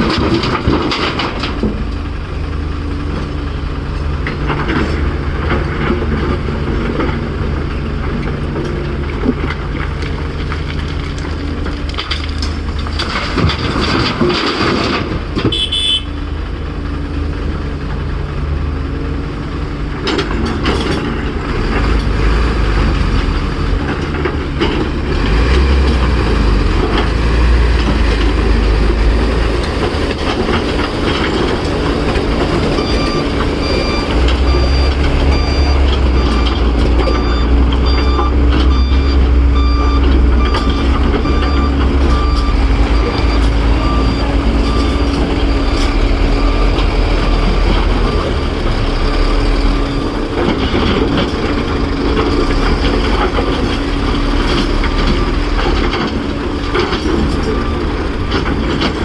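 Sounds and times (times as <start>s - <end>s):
heavy diesel engines rumbling: 0.0s - 59.0s
reversing alarm beeping: 15.5s - 16.1s, 29.2s - 51.8s, 52.6s - 58.2s.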